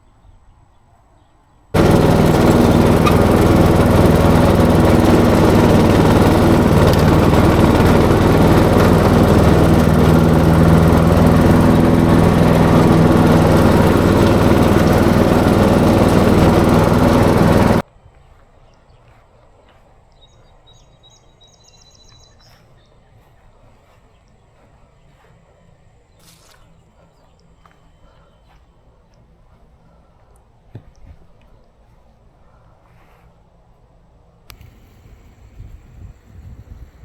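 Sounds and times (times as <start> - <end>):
lawn mower engine running: 1.8 - 17.8, 34.5 - 37.0.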